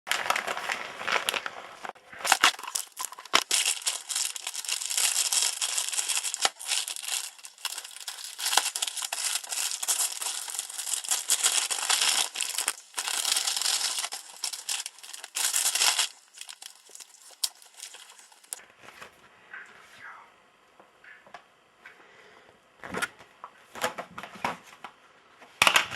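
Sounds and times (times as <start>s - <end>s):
packaging crinkling and tearing: 0.1s - 18.6s.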